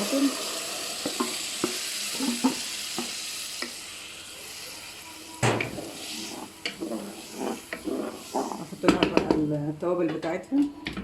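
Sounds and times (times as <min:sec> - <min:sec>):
onions sizzling in a pot: 0:00.0 - 0:10.0
spoon tapping a pot: 0:08.8 - 0:09.5.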